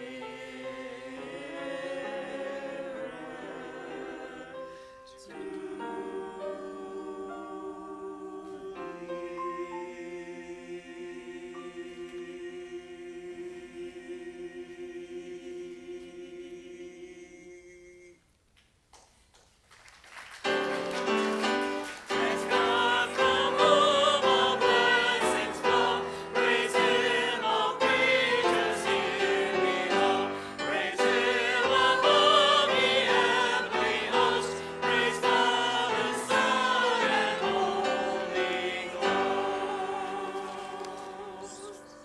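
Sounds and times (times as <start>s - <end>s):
voices singing a hymn: 0.0s - 18.3s, 20.5s - 42.0s
instrumental accompaniment: 20.4s - 42.0s.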